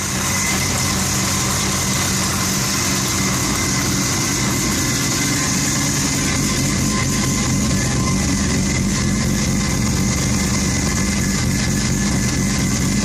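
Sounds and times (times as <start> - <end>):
rotary engine idling: 0.0 - 13.0.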